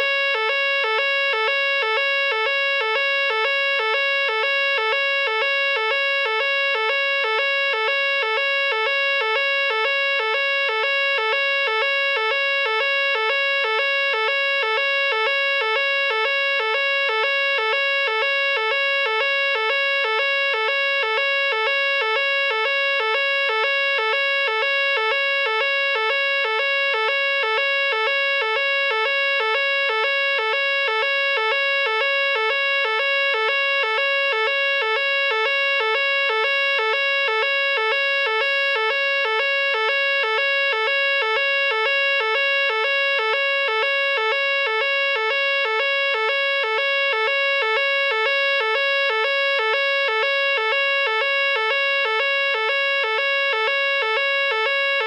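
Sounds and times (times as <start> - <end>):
fire alarm pulsed electronic tone: 0.0 - 55.0.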